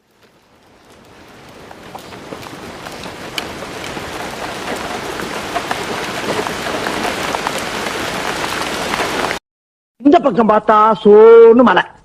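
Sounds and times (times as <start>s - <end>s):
heavy rain falling: 0.0s - 9.4s.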